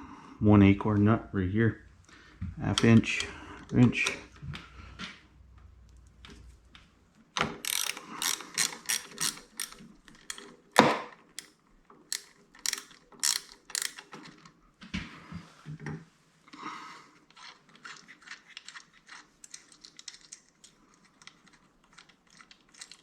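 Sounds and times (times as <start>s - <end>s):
ratchet wrench clicking: 7.6s - 10.4s, 12.1s - 14.1s.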